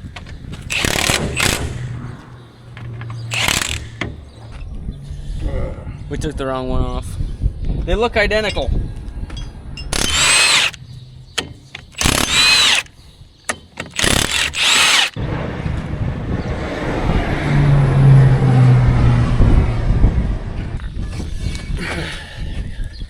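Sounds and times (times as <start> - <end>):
power drill whining: 0.7 - 1.8, 3.3 - 4.0, 9.9 - 10.8, 11.8 - 12.9, 13.9 - 15.2
rumbling noise with low hum: 18.8 - 21.7.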